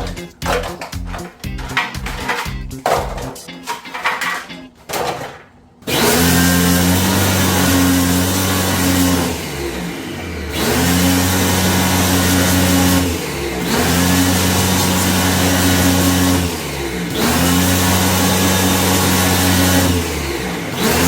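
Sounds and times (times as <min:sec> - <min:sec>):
electric motor humming: 0:05.9 - 0:21.0.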